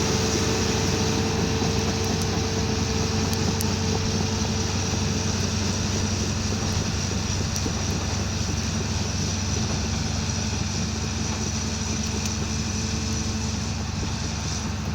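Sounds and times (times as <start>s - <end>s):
excavator engine running: 0.0s - 14.9s.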